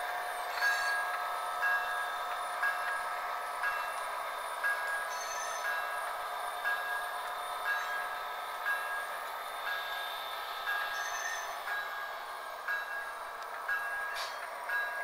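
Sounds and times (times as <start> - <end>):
model diesel locomotive sound: 0.0 - 15.0.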